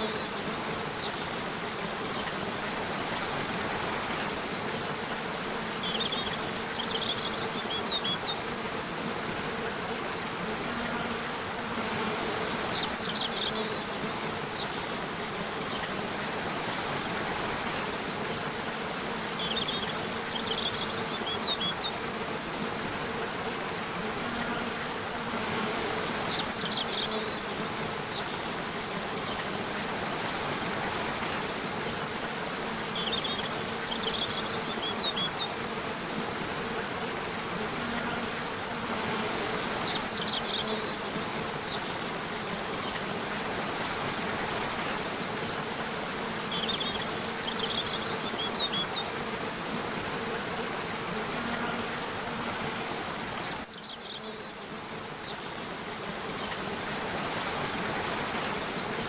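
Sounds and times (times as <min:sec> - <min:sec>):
bees buzzing: 0:00.0 - 0:59.0.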